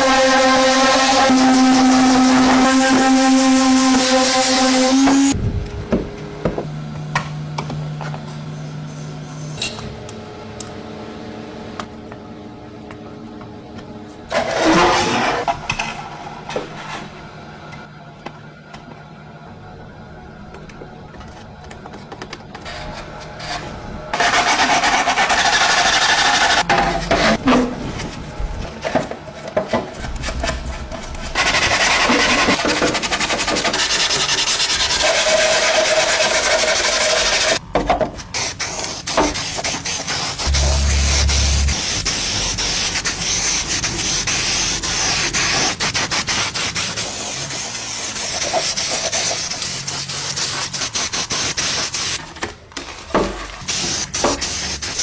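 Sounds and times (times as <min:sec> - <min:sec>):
abrasive sanding and rubbing: 0:38.7 - 0:52.1.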